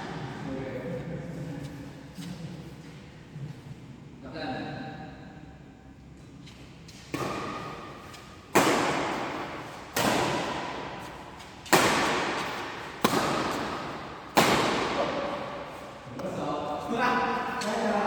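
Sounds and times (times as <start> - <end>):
rackets hitting shuttlecock: 6.9 - 16.4.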